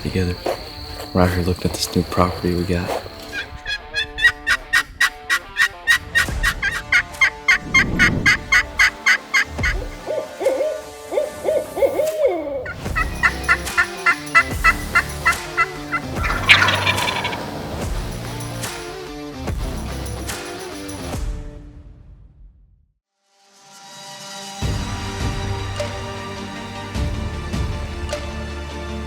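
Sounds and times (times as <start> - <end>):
turkey calling: 0.2 - 18.5
turkey gobble: 3.3 - 18.0.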